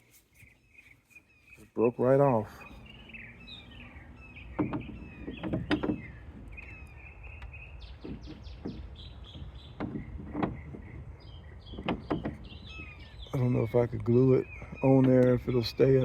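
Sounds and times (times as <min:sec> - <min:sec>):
door handle knocking and rattling: 0:04.5 - 0:06.7, 0:07.9 - 0:12.8.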